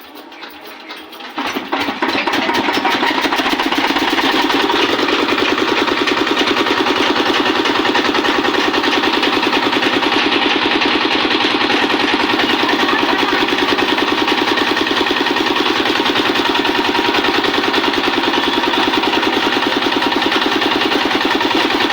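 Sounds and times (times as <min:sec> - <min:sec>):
engine running with fast pulse: 0:00.0 - 0:21.9.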